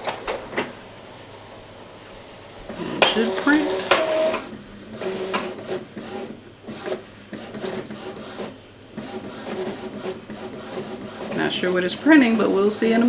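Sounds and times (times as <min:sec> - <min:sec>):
inkjet printer whirring and clicking: 0:00.0 - 0:13.0.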